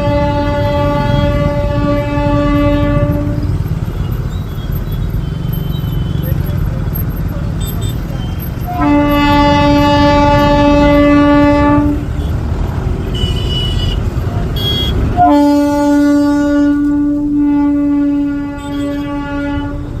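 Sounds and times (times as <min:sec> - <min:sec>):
train horn blasts: 0:00.0 - 0:03.6, 0:08.7 - 0:12.3, 0:14.6 - 0:20.0
low rumble of train: 0:00.0 - 0:05.6, 0:08.2 - 0:20.0.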